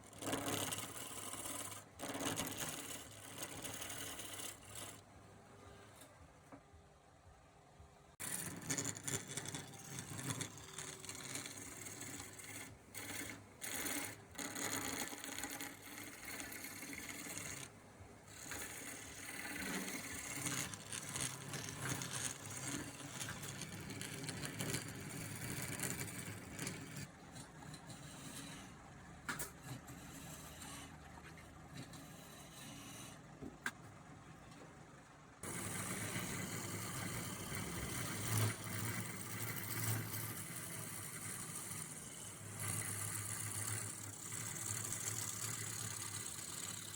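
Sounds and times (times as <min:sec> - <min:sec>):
wood lathe tool cutting wood: 0:08.2 - 0:17.7.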